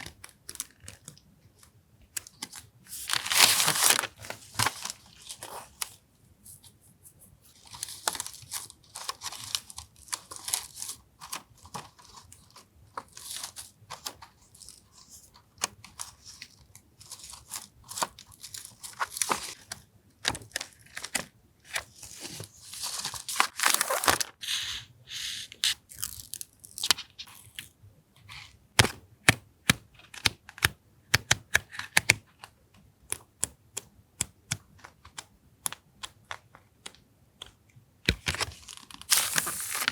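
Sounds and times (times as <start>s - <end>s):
paper rustling and tearing: 2.9s - 5.9s, 22.0s - 27.6s, 38.3s - 39.9s.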